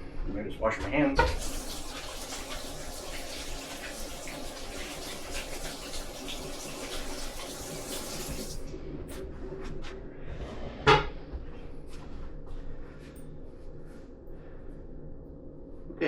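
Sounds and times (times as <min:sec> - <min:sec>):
tap water running over hands: 0:01.2 - 0:08.7.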